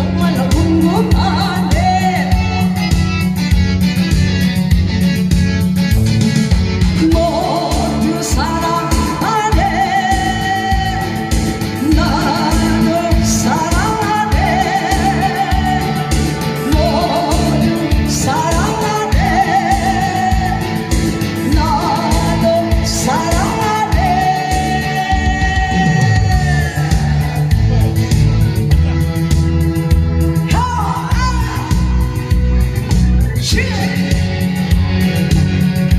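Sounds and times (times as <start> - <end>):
backing track with steady beat: 0.0 - 35.9
person singing long notes: 7.0 - 28.4.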